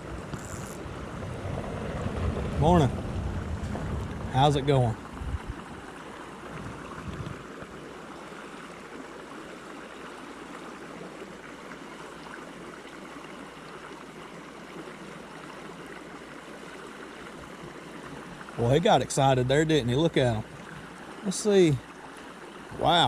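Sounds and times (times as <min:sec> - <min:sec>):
low rumble: 0:00.0 - 0:05.8
creek water flowing: 0:00.0 - 0:23.0.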